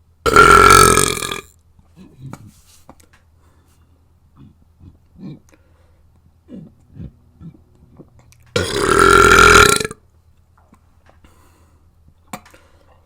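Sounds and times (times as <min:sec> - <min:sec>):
person burping: 0:00.3 - 0:02.5, 0:06.4 - 0:10.0.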